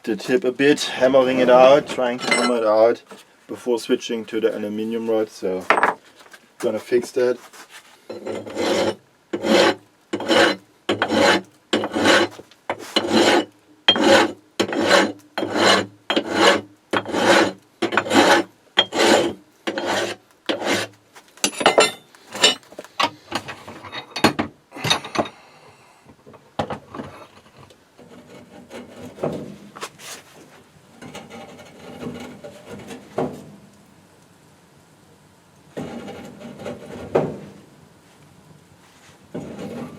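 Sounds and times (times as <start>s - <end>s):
file scraping metal rod: 8.1s - 22.6s, 39.4s - 39.9s.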